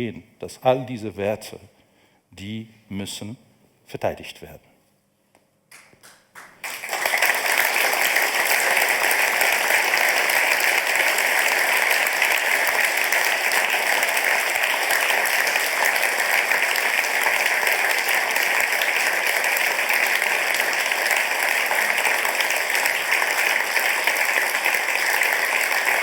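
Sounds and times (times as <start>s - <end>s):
audience applauding: 5.7s - 26.0s.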